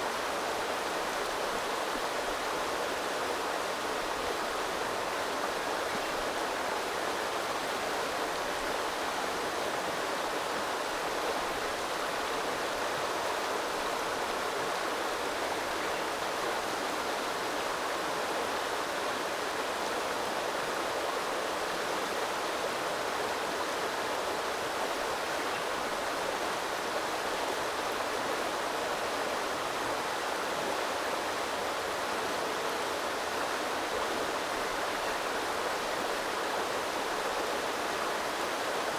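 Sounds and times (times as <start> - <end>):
small river flowing: 0.0 - 38.9.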